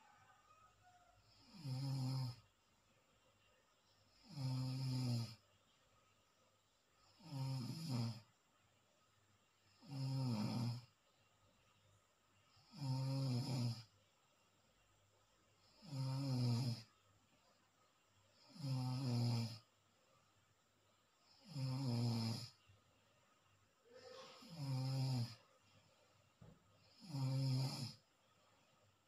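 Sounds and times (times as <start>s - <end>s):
quiet breaths: 0.0s - 29.0s
deep snoring: 1.2s - 2.5s, 4.1s - 5.4s, 7.0s - 8.3s, 9.7s - 10.9s, 12.6s - 13.9s, 15.6s - 16.9s, 18.4s - 19.7s, 21.2s - 22.6s, 24.4s - 25.4s, 26.8s - 28.1s.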